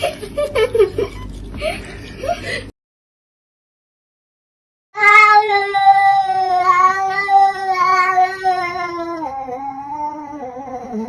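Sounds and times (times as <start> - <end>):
cat yowling: 5.0 - 11.0.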